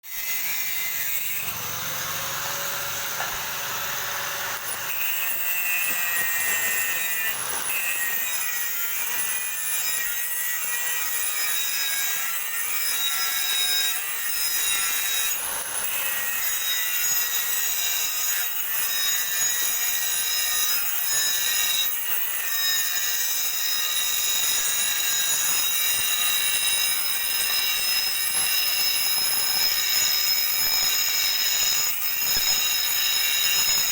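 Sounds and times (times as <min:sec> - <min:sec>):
arc welding crackling hiss: 0:01.0 - 0:10.2, 0:23.8 - 0:33.9.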